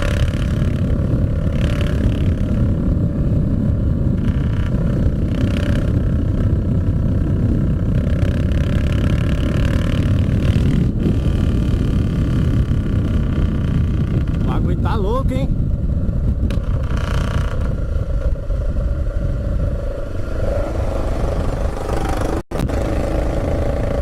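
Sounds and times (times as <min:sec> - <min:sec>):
loud engine exhaust: 0:16.8 - 0:24.0.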